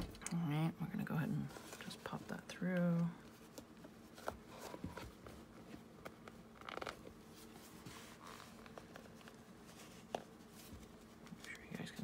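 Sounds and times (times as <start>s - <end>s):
small clicks and rustles: 2.6s - 12.0s.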